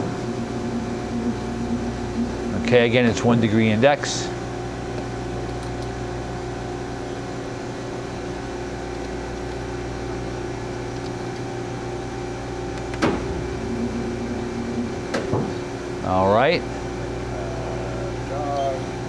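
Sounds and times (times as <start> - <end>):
machine humming: 0.0 - 7.6, 9.5 - 19.0
drive whine: 0.0 - 19.0
sharp machine clunk: 12.9 - 15.8.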